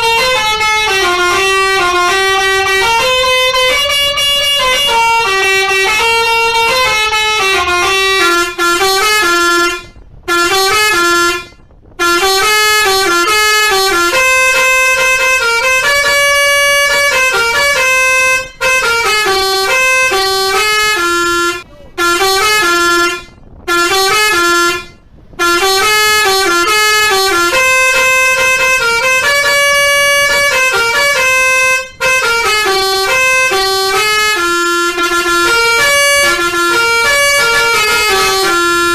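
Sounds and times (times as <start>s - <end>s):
bus horn playing a tune: 0.0s - 38.9s.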